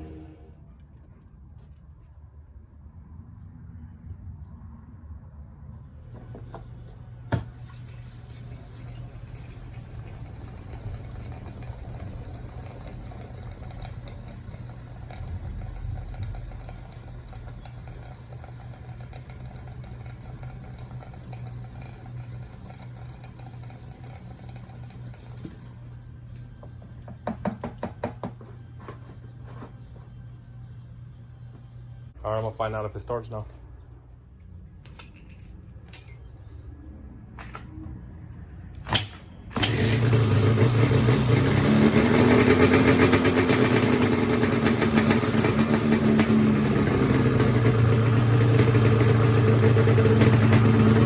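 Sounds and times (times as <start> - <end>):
gasoline pouring: 7.5 - 27.0.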